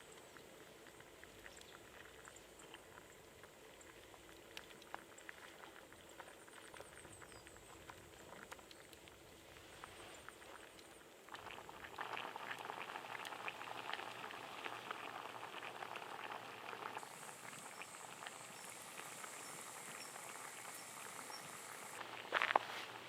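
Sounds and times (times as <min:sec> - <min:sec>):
broth bubbling in a pot: 0:00.0 - 0:23.0.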